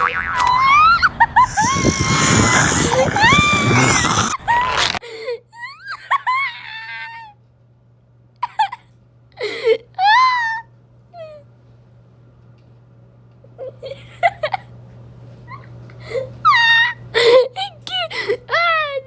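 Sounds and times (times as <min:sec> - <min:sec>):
high-pitched voice wailing: 0:00.5 - 0:04.3.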